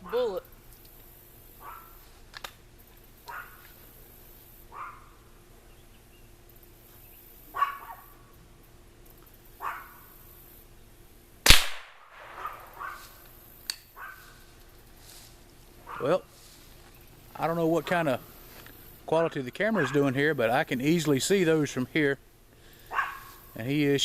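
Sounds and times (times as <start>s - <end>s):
dog barking: 1.6s - 2.0s, 3.3s - 3.6s, 4.7s - 5.2s, 7.5s - 8.2s, 9.6s - 10.0s, 12.4s - 13.2s, 14.0s - 14.3s, 15.8s - 16.2s, 19.7s - 20.1s, 22.9s - 23.4s
gunshot with echo: 11.5s - 13.0s.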